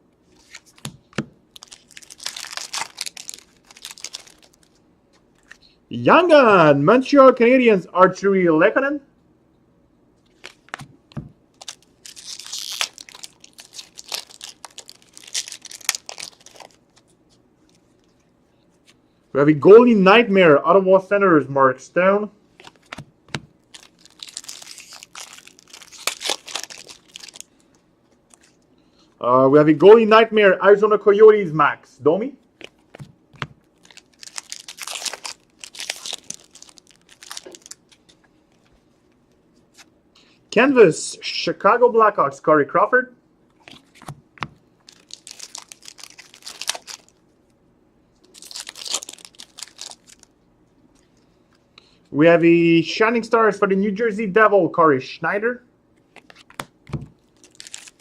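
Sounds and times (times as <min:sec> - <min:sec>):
foil wrapper tearing and crinkling: 0:00.4 - 0:04.8, 0:11.6 - 0:17.1, 0:23.6 - 0:27.6, 0:33.7 - 0:38.1, 0:44.9 - 0:47.2, 0:48.3 - 0:50.3, 0:57.2 - 0:58.0.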